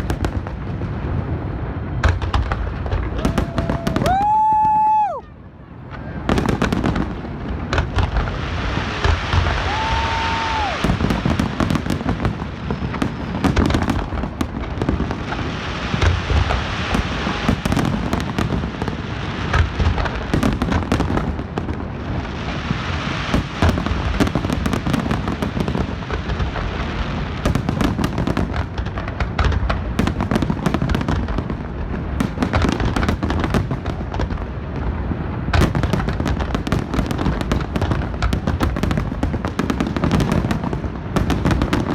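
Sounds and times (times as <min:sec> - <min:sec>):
fireworks booming and crackling: 0:00.0 - 0:41.9.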